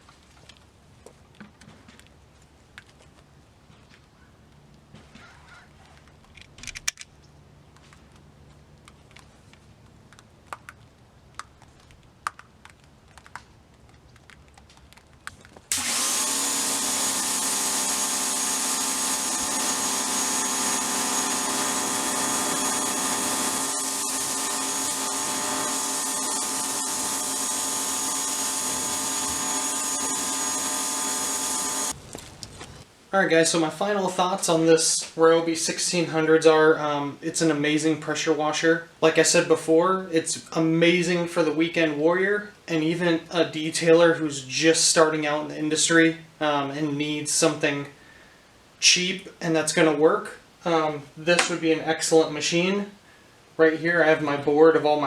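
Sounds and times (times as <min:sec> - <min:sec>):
pressure washer whining: 0:15.7 - 0:32.8.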